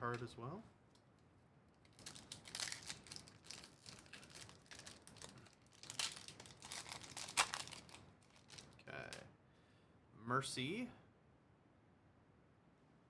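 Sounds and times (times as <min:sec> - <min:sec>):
foil wrappers crinkling: 0:01.9 - 0:09.2.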